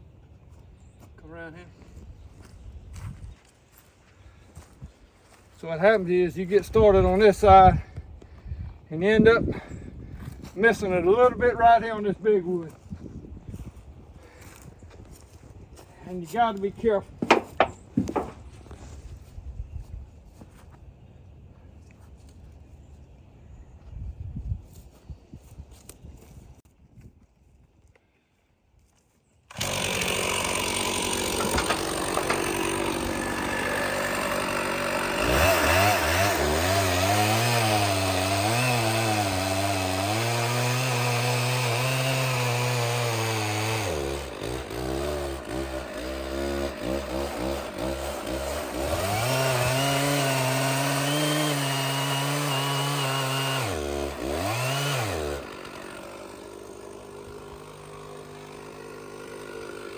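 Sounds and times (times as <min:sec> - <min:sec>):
chainsaw cutting log: 0:16.4 - 0:18.8, 0:29.5 - 0:59.9.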